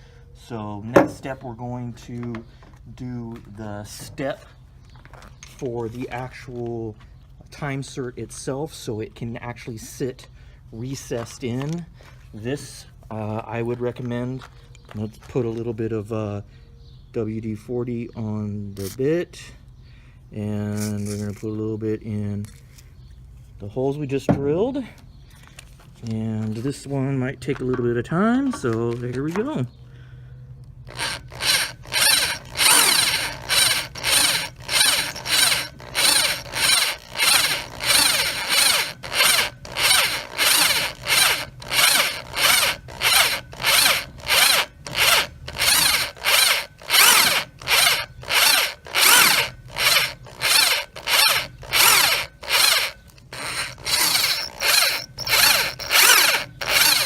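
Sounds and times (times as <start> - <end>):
power drill cutting metal: 30.9 - 57.0.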